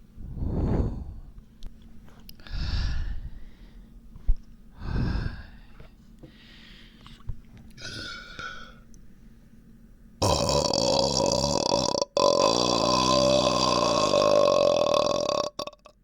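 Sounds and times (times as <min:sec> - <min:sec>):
person breathing heavily: 0:00.2 - 0:01.4, 0:02.4 - 0:04.0, 0:04.7 - 0:07.2, 0:07.8 - 0:08.8.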